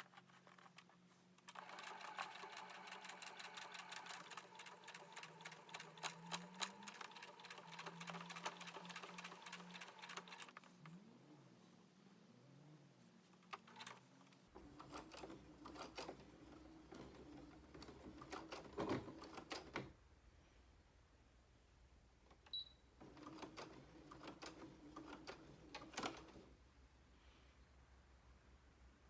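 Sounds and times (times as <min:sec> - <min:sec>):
sewing machine clicking and knocking: 0:01.4 - 0:10.6, 0:13.5 - 0:19.9, 0:23.0 - 0:26.4.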